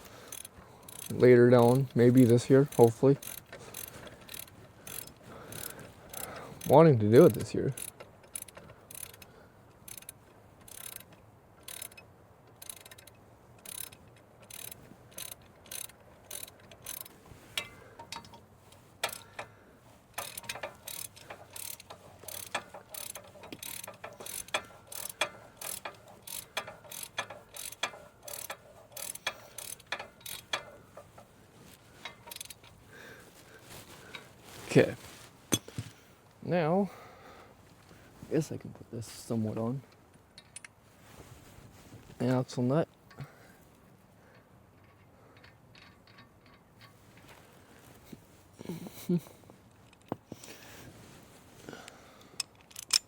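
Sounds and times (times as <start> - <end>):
ratchet wrench clicking: 0.2 - 19.5, 20.1 - 31.3, 32.0 - 32.7, 52.4 - 53.0.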